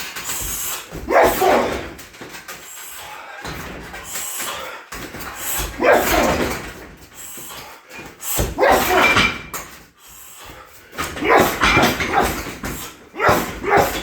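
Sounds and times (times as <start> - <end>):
kicks hitting heavy bag: 0.2 - 2.1, 4.9 - 7.0, 8.3 - 9.6, 11.0 - 14.0.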